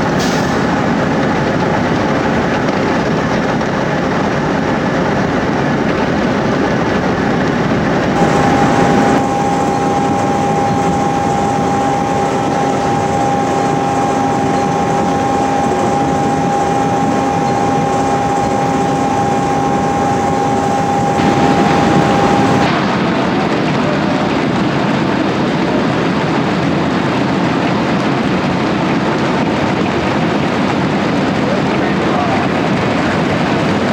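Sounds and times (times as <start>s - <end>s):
harvesting machinery rumble and rattle: 0.0s - 22.9s
steady high whine: 0.0s - 23.1s.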